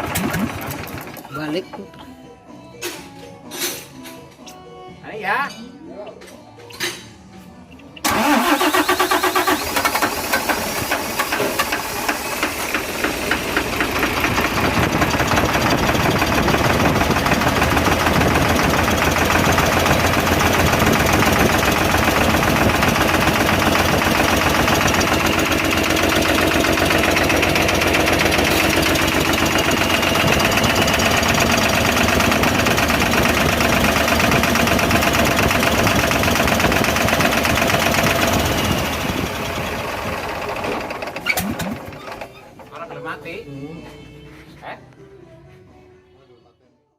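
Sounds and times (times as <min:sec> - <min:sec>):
diesel truck engine running: 0:00.0 - 0:01.6, 0:08.0 - 0:42.6.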